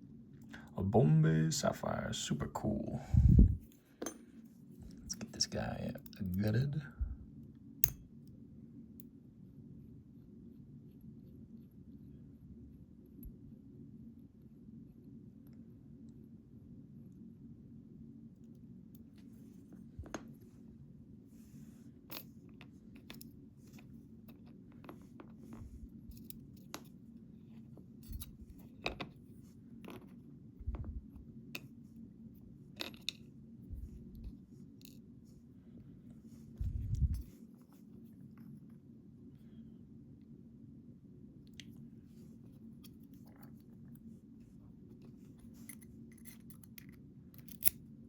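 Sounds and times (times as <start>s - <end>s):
small metallic clicks and taps: 7.8s - 8.0s.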